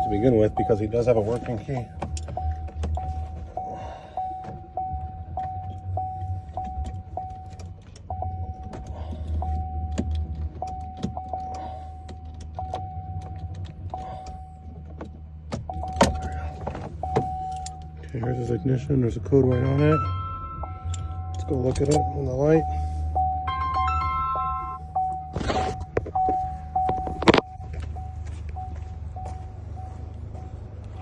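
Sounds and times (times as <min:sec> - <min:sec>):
vehicle warning chime: 0:00.0 - 0:31.0
low hum: 0:01.3 - 0:31.0
keys and tools rattling: 0:20.0 - 0:22.2.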